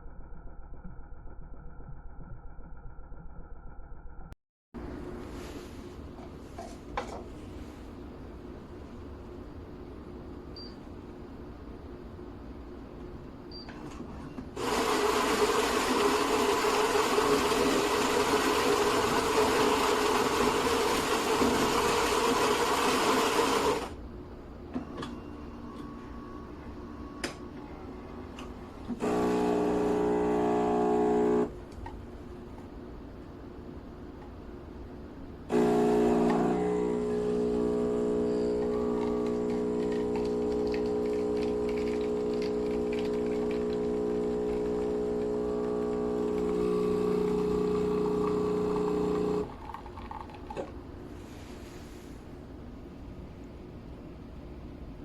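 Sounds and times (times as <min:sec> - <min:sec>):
espresso machine buzzing: 0:14.6 - 0:24.0, 0:28.8 - 0:31.6, 0:35.5 - 0:50.6.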